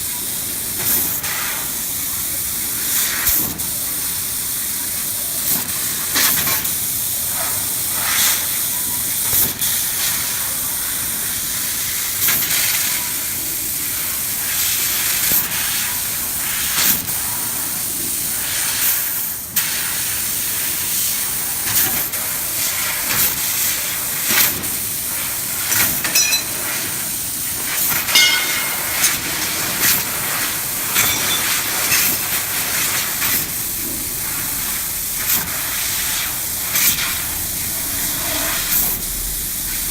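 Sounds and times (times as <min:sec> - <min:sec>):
laser cutter hissing: 0:00.7 - 0:39.9.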